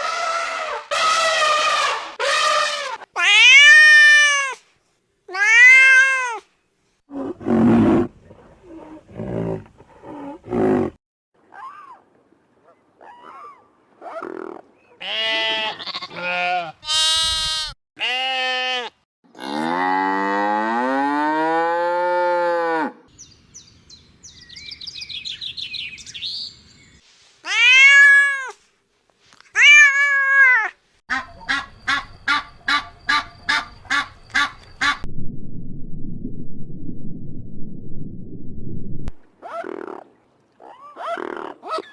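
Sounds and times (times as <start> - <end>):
low rumbling noise: 34.7 - 39.2.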